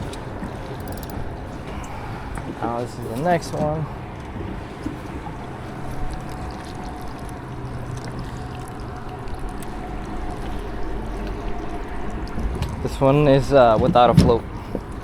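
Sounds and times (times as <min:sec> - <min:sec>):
boat motor humming: 0:00.0 - 0:15.0
water pouring and splashing: 0:00.0 - 0:15.0.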